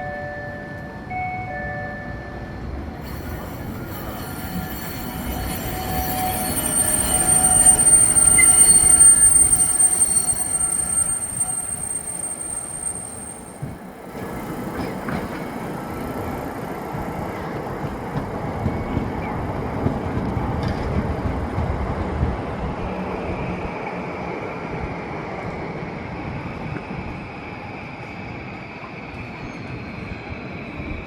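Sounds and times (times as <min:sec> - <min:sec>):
tram wheels rumbling on track: 0:02.6 - 0:31.0
steady high whine: 0:03.0 - 0:13.8.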